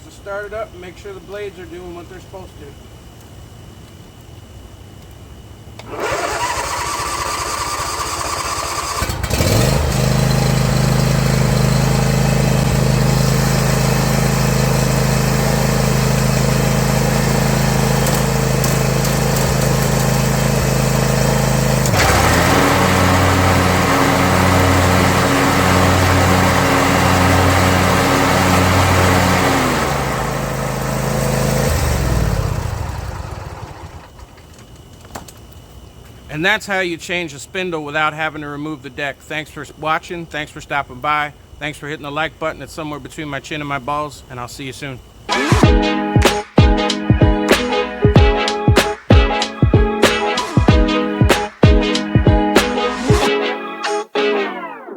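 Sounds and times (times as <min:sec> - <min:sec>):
mower blades pulsing: 0:05.8 - 0:34.4, 0:45.3 - 0:53.3
mower engine running: 0:05.8 - 0:34.4, 0:45.3 - 0:53.3
starter cranking engine: 0:05.8 - 0:34.4.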